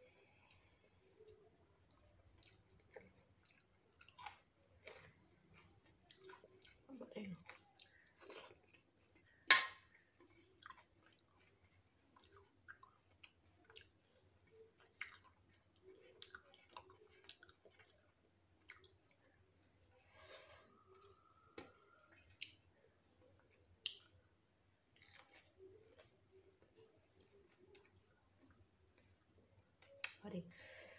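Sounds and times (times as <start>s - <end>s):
person chewing: 0.1s - 30.2s
mouth clicks and smacks: 29.8s - 30.2s.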